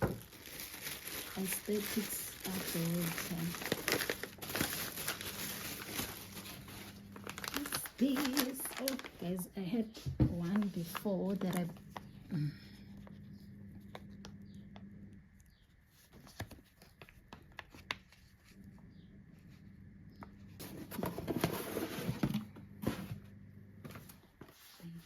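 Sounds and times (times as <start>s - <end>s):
packaging rustling and tearing: 0.0s - 9.5s, 10.4s - 12.1s
packaging clicks: 0.2s - 9.2s.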